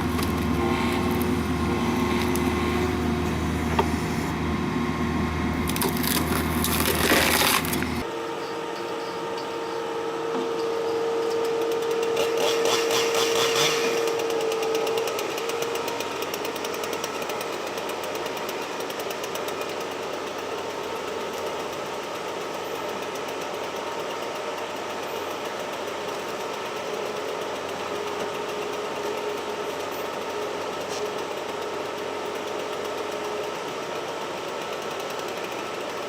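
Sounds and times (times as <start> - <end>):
machinery running: 0.0 - 17.3.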